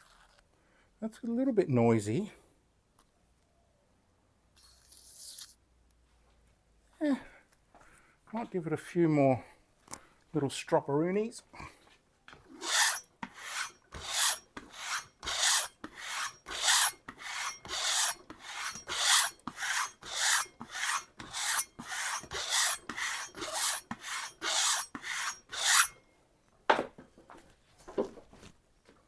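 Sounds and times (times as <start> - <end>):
knife stropped on leather: 12.6 - 25.9.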